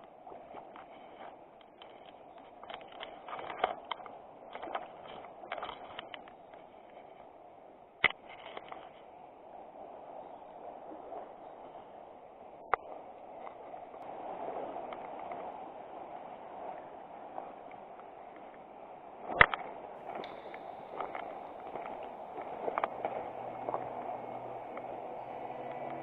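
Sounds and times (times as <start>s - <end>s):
river water running: 19.8s - 26.0s.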